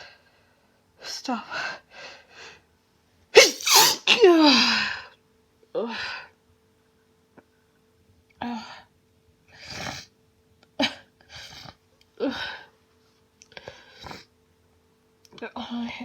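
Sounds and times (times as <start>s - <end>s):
woman sneezing: 3.4s - 4.8s.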